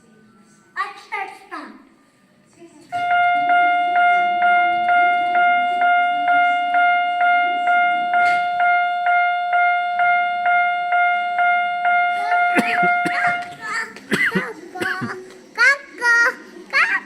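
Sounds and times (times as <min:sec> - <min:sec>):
level crossing warning bell ringing: 0:03.1 - 0:13.1.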